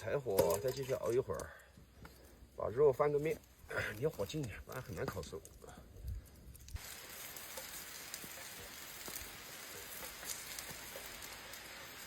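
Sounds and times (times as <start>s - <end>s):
wood fire crackling: 0.0s - 12.0s
heavy rain falling: 6.8s - 12.0s.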